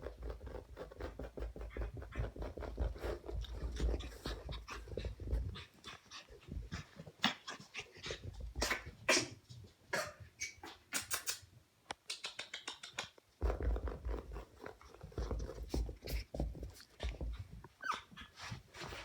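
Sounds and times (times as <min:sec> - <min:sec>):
puppy scratchy clicks and snuffles: 0:10.6 - 0:17.0
puppy squeak: 0:17.8 - 0:18.1.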